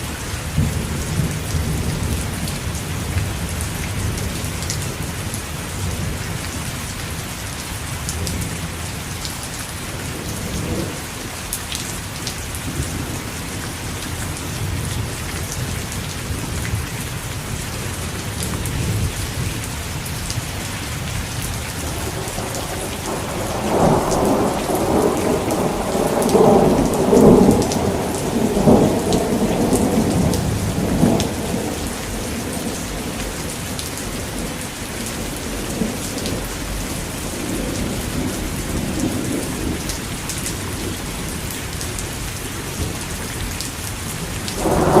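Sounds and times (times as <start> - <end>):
heavy rain falling: 0.0 - 45.0
rumbling thunder: 14.4 - 41.5, 44.1 - 45.0.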